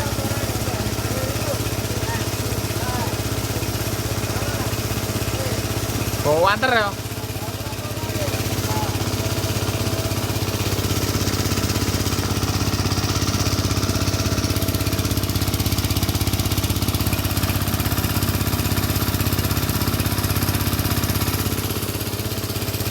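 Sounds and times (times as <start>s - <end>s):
pressure washer engine running: 0.0s - 22.9s.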